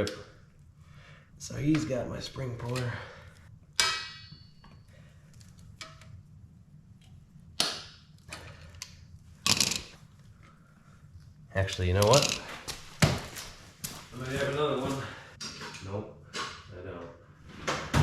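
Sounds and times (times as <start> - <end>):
metallic clang: 3.8 - 4.8
metal tools clattering: 9.5 - 10.0, 12.0 - 12.6
metal tools knocking: 12.0 - 12.5.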